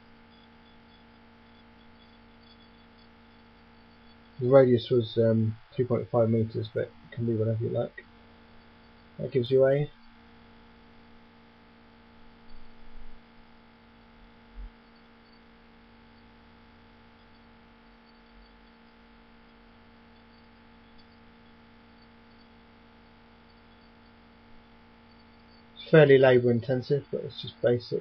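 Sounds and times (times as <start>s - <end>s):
low electrical hum: 0.0s - 28.0s.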